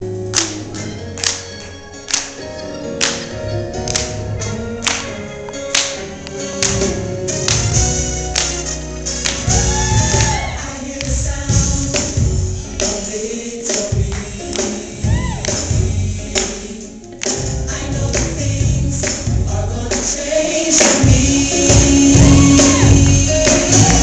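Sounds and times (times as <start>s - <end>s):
gospel choir singing over beat: 9.3s - 24.0s.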